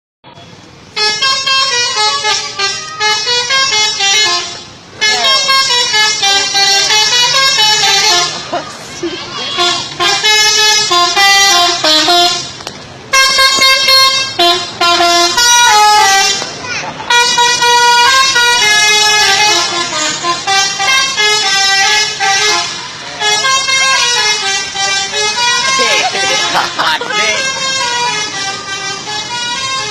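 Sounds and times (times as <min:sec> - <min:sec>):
musical air horn melody: 0:00.9 - 0:08.4, 0:09.1 - 0:16.5, 0:17.1 - 0:29.9.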